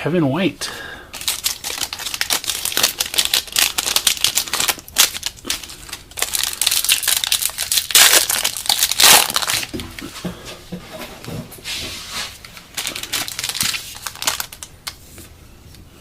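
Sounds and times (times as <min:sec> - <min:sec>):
foil wrapper crinkling and tearing: 0:01.1 - 0:09.8, 0:12.4 - 0:15.0.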